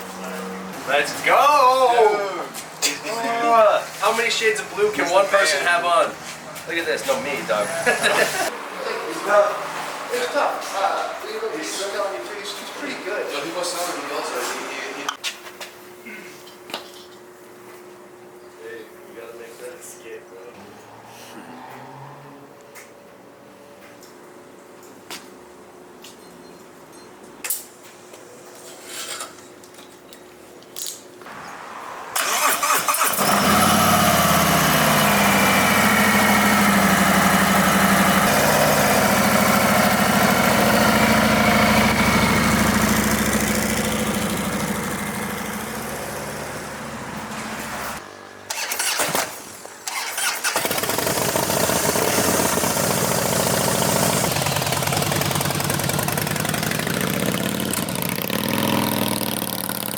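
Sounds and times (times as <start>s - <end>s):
vehicle engine running: 32.2s - 48.7s, 50.5s - 59.9s.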